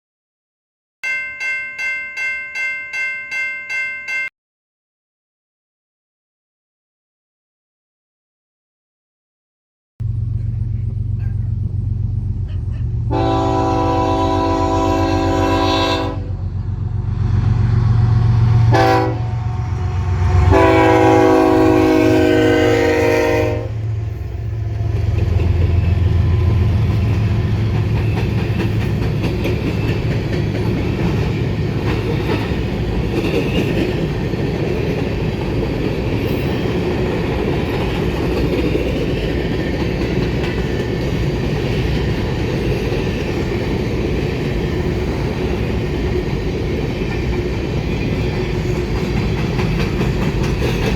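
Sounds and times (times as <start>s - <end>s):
diesel engine rumble: 10.0s - 14.5s
locomotive air horn: 13.1s - 16.5s, 18.6s - 24.2s
train wheels clattering on rails: 23.8s - 50.9s.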